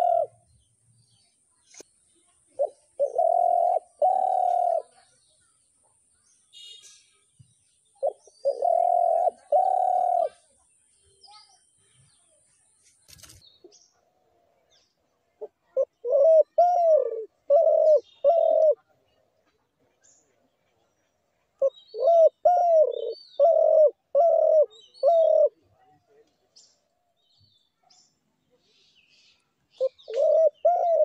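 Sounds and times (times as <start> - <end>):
dove cooing: 0.0 - 0.4, 2.6 - 5.0, 8.0 - 10.5, 15.4 - 18.8, 21.6 - 25.7, 29.8 - 31.0
small birds chirping: 0.0 - 31.0.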